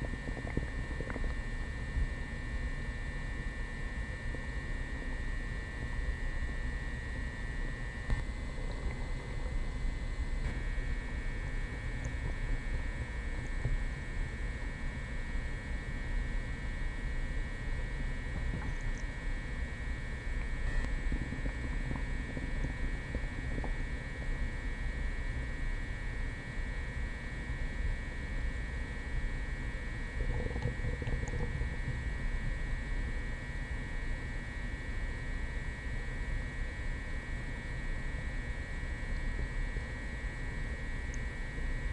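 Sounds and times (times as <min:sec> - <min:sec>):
stomach gurgling: 0:00.0 - 0:34.4
electrical hum with high whine: 0:00.0 - 0:41.9
low rumbling noise: 0:18.2 - 0:25.5, 0:30.1 - 0:32.9.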